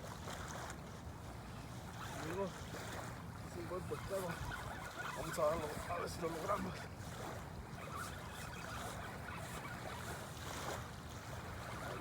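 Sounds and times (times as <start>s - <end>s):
wind: 0.0s - 12.0s.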